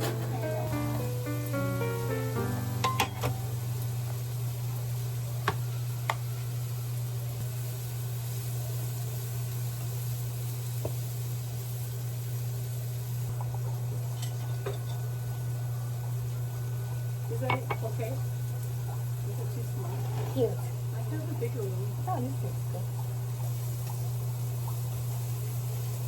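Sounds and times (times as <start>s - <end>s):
dishes and utensils clinking: 0.0s - 1.0s.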